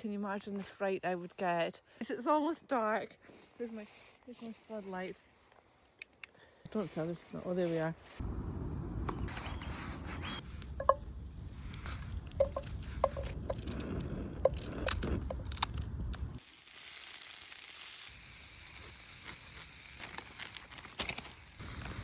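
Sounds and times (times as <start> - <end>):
crackles and sharp pops: 10.5 - 22.0
food sizzling in a pan: 16.4 - 22.0.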